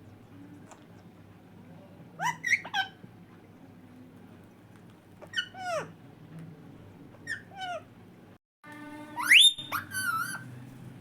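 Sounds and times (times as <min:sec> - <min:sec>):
parrot calling: 0:02.2 - 0:03.0, 0:09.2 - 0:10.5.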